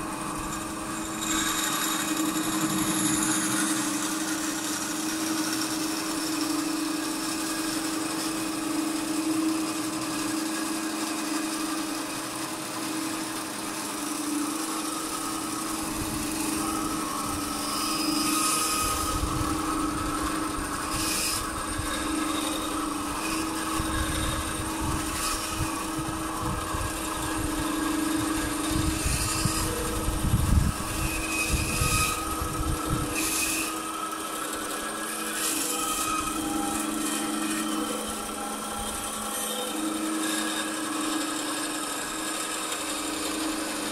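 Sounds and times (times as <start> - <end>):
electric power tool motor hum: 0.0 - 43.9
tool grinding into wood: 0.0 - 43.9
short scratchy strokes: 14.8 - 41.4.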